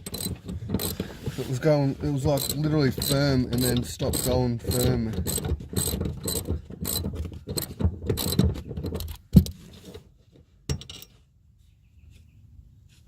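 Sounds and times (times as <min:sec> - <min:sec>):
ratchet spanner clicking: 0:00.0 - 0:01.1, 0:02.4 - 0:07.0.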